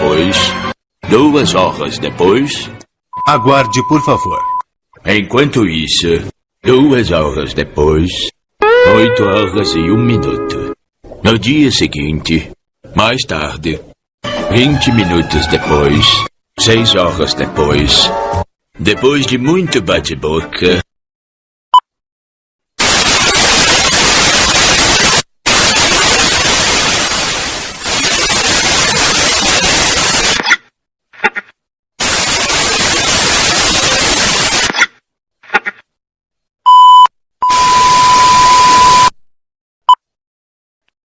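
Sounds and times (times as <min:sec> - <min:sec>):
loud static hiss: 0:22.8 - 0:30.4, 0:32.0 - 0:34.7
electronic beeps: 0:36.7 - 0:39.1.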